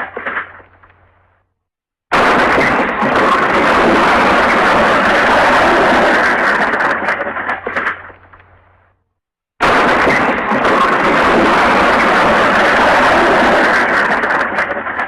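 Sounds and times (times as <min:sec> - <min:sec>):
loud crashing smash: 0:02.1 - 0:08.1, 0:09.6 - 0:15.0.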